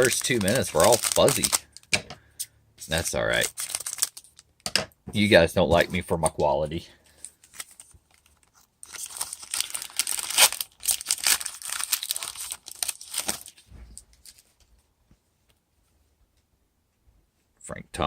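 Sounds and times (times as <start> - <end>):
wrapper tearing and crinkling: 0.0 - 1.9, 3.2 - 4.4, 7.3 - 14.6.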